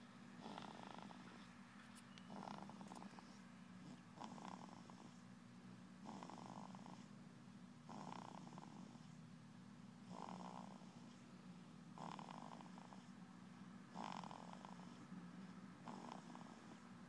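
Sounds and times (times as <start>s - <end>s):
steady low hum: 0.0s - 17.0s
fluttering snoring: 0.4s - 1.5s, 2.3s - 5.2s, 6.0s - 7.1s, 7.9s - 9.2s, 10.0s - 11.2s, 12.0s - 13.2s, 13.9s - 15.1s, 15.8s - 16.9s.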